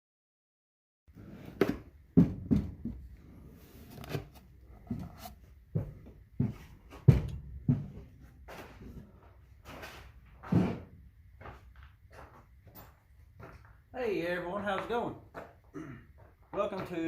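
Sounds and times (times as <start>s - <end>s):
knocks and clunks: 5.8s - 8.1s, 10.4s - 11.0s.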